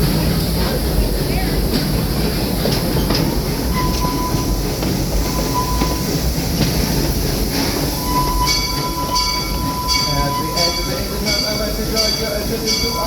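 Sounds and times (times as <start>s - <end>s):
train cars rumbling on rails: 0.0s - 13.0s
wheel squeal: 3.0s - 6.2s, 7.8s - 11.6s.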